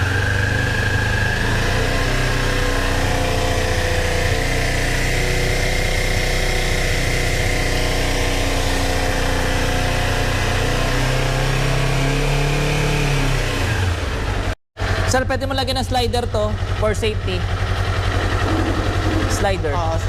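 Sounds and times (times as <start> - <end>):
motorcycle engine idling: 13.9 - 20.0.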